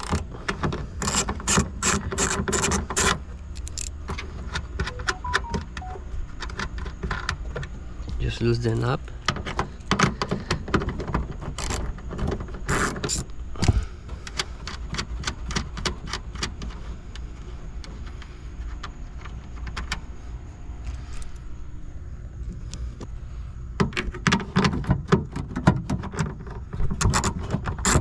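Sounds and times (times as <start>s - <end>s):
ratchet wrench clicking: 0.0s - 0.2s, 1.0s - 3.9s, 12.7s - 13.2s.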